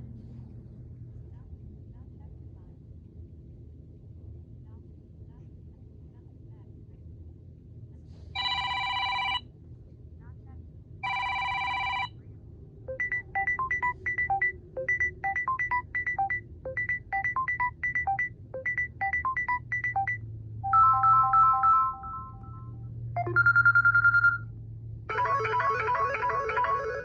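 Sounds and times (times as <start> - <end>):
phone ringtones: 8.4 - 9.4, 11.0 - 12.1, 12.9 - 24.5, 25.1 - 27.0
high electronic beeps: 12.9 - 24.4
held electronic tones: 12.9 - 24.5, 25.1 - 27.0.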